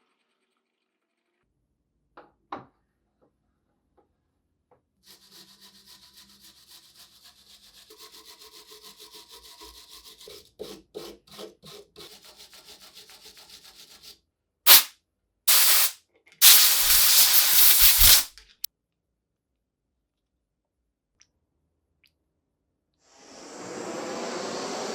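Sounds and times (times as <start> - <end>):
loud hissing bursts: 14.7 - 14.9, 15.5 - 18.3
wire brush scrubbing rusty steel: 15.5 - 18.3.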